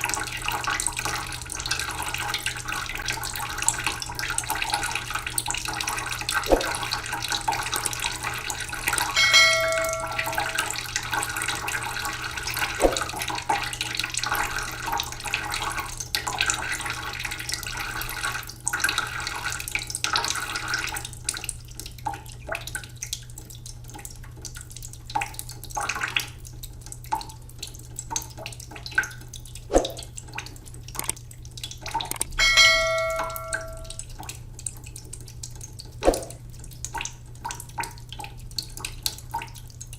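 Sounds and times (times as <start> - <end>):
bell-like ring: 9.1 - 10.8, 32.4 - 34.0.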